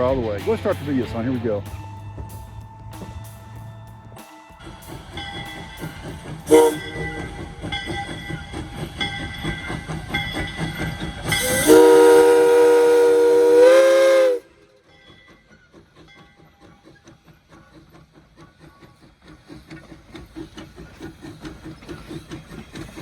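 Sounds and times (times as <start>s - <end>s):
locomotive running rumble: 0.0s - 23.0s
steam locomotive whistle: 4.2s - 8.6s, 10.4s - 14.9s.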